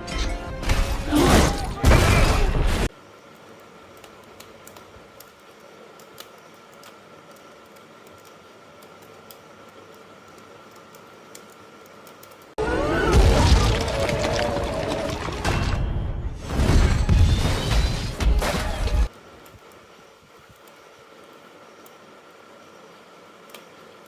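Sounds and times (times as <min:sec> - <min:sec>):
low hiss: 0:02.9 - 0:12.6, 0:19.1 - 0:24.0
small clicks and ticks: 0:03.0 - 0:12.6, 0:19.1 - 0:24.0.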